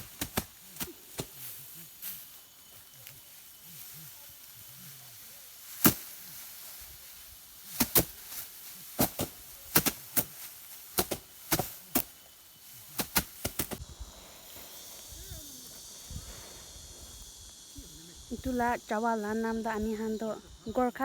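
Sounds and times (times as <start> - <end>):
rice stalks snapping: 0.0 - 2.3, 4.8 - 12.3, 12.9 - 13.8.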